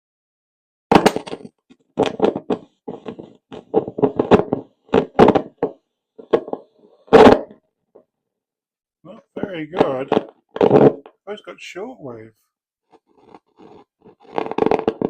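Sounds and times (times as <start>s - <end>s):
radio sound from speakers: 9.1s - 12.3s.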